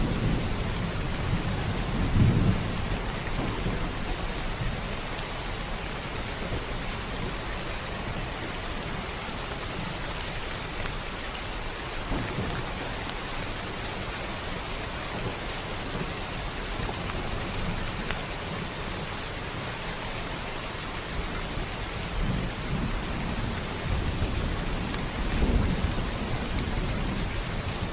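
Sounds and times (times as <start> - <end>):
low rumbling thunder: 0.0 - 19.6, 21.1 - 27.9
heavy rain drumming on roof: 0.0 - 27.9.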